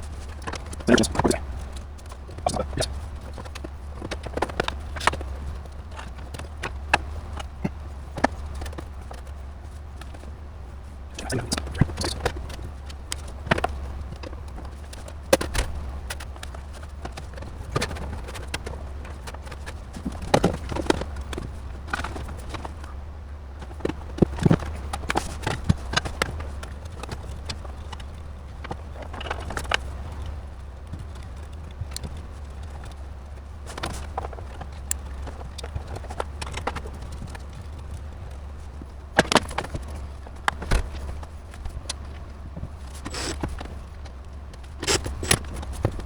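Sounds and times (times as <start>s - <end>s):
steady low hum: 0.0s - 46.0s
hard objects clicking and knocking: 38.8s - 46.0s.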